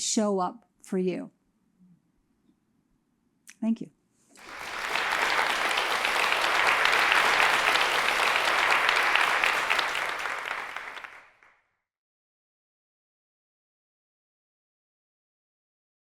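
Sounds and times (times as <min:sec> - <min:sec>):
audience applauding: 0:04.4 - 0:11.5.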